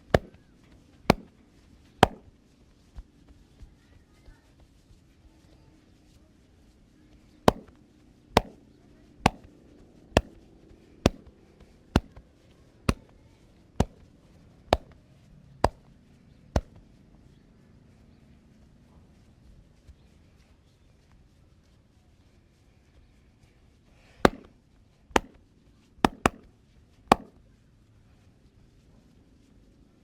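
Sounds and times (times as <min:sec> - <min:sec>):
hand slaps on body: 0:00.0 - 0:00.4, 0:01.1 - 0:01.4, 0:02.0 - 0:02.3, 0:07.5 - 0:07.8, 0:08.4 - 0:08.6, 0:09.2 - 0:09.5, 0:10.2 - 0:10.4, 0:11.0 - 0:11.3, 0:12.0 - 0:12.2, 0:12.9 - 0:13.1, 0:13.8 - 0:14.1, 0:14.7 - 0:15.0, 0:15.6 - 0:15.9, 0:16.6 - 0:16.8, 0:24.3 - 0:24.5, 0:25.2 - 0:25.4, 0:26.0 - 0:26.5, 0:27.1 - 0:27.4.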